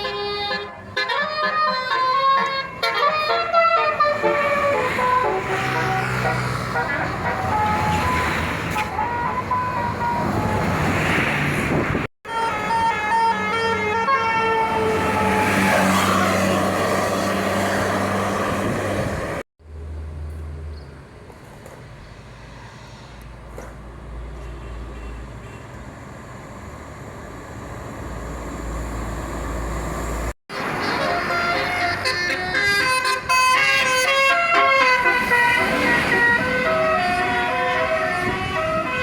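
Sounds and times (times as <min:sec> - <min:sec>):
bus horn melody: 0:00.0 - 0:10.8, 0:12.2 - 0:16.8, 0:30.5 - 0:39.0
bus engine rumble: 0:00.0 - 0:39.0.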